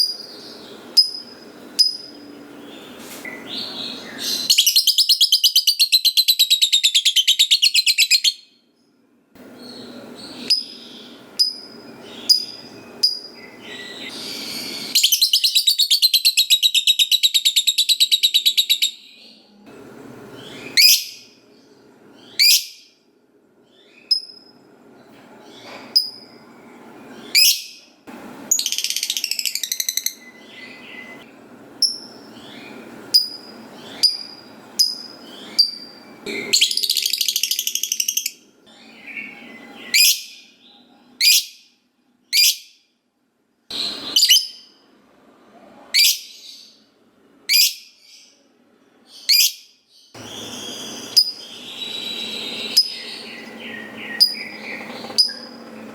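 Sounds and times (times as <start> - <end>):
lovebird chirping: 0.0 - 8.5, 9.6 - 19.4, 23.8 - 24.6, 31.8 - 41.6, 49.1 - 55.9.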